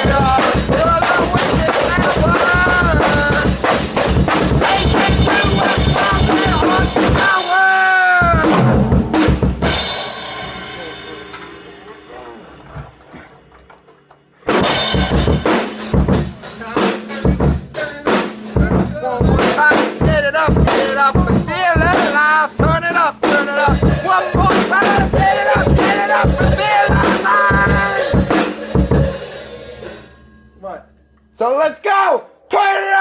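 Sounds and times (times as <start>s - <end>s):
loud music with drum kit: 0.0s - 30.3s.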